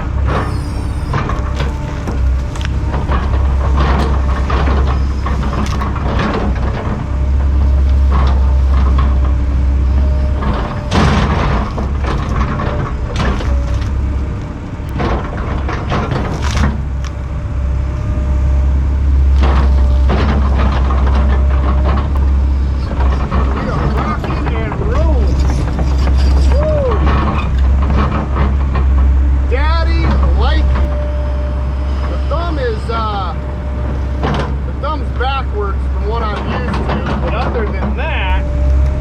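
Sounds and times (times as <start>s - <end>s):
excavator diesel engine under load: 0.0s - 39.0s
wood and roots cracking: 1.0s - 18.5s.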